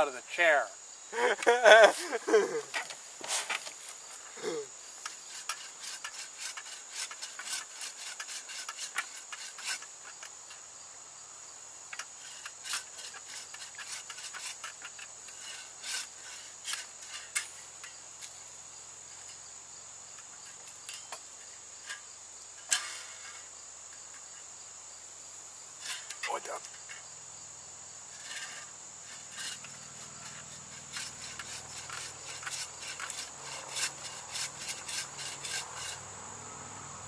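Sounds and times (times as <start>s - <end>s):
high insect trill: 0.0s - 37.0s
saw cutting wood: 5.1s - 9.9s, 12.3s - 17.5s, 28.2s - 36.0s.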